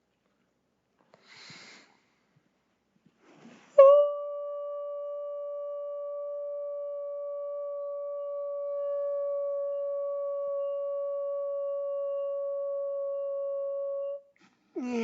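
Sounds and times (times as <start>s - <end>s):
steady held tone: 3.8s - 14.2s.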